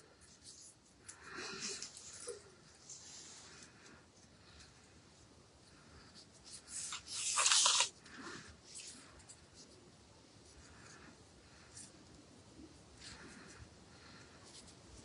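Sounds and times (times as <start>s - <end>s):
scratchy handling sounds: 6.0s - 9.8s
craft materials rustling: 6.5s - 9.0s.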